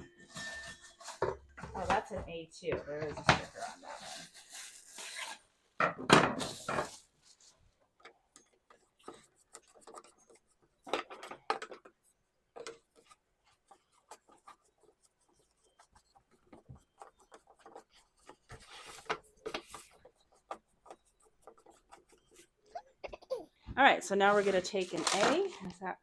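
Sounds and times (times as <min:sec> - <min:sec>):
rubbing or scraping: 0:00.0 - 0:05.5, 0:12.8 - 0:22.8, 0:23.9 - 0:25.8.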